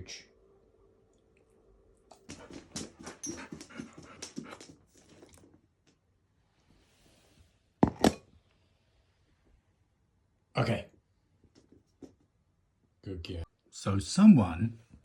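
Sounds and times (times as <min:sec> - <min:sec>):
puppy chewing and licking: 0:02.1 - 0:05.6.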